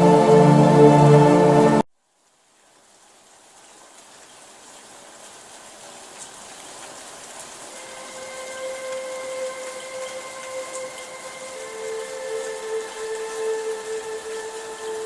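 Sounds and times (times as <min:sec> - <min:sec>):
music: 0:00.0 - 0:01.8, 0:07.8 - 0:15.0
steady rainfall: 0:00.0 - 0:15.0.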